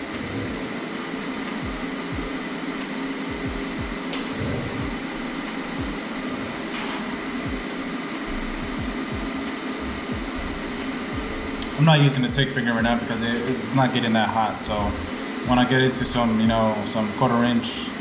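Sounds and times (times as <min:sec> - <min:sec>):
welding arc buzzing: 0:00.0 - 0:12.3.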